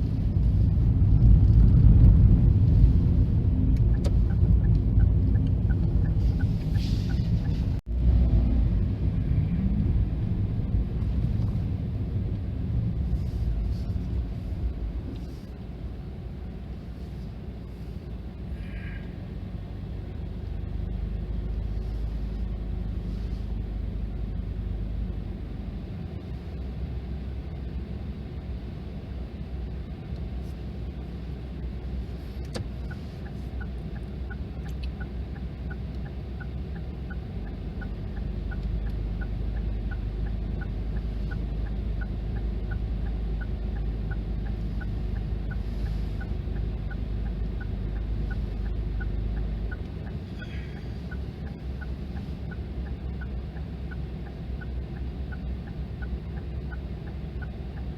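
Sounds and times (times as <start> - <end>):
low rumble: 0.0 - 27.7.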